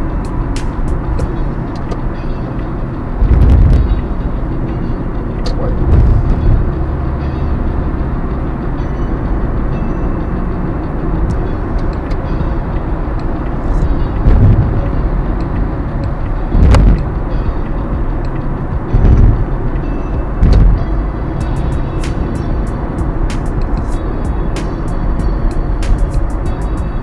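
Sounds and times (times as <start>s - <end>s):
low thumps: 0.0s - 2.3s, 3.2s - 4.4s, 5.3s - 7.3s, 11.1s - 27.0s
car engine and road rumble: 0.0s - 27.0s.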